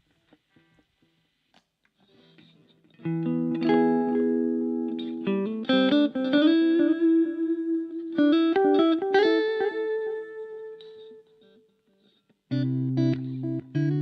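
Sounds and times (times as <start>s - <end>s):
electric guitar notes and chords: 2.0s - 11.5s, 12.5s - 14.0s.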